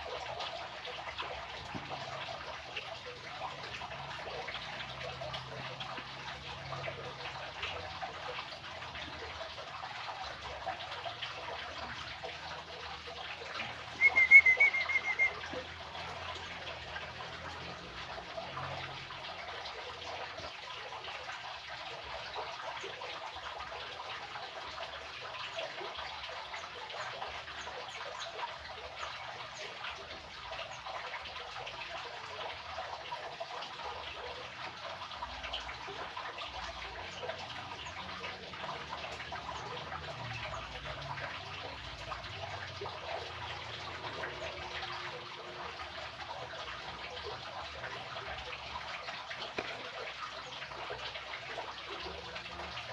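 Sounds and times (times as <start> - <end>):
bird chirp: 13.8 - 15.6.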